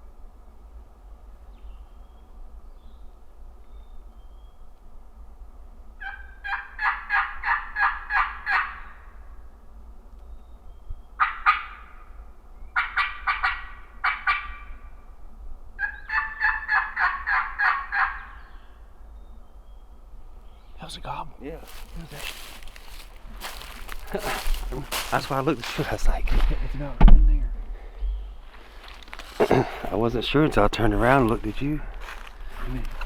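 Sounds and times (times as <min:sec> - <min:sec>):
turkey yelps: 0:06.0 - 0:09.0, 0:11.2 - 0:12.0, 0:12.8 - 0:14.8, 0:15.8 - 0:18.5.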